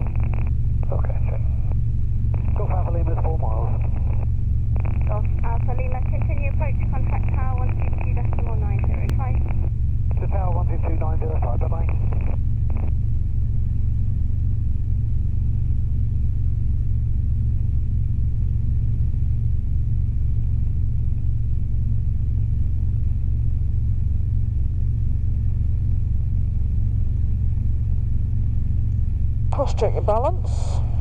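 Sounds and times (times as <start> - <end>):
helicopter engine and rotor drone: 0.0 - 18.1.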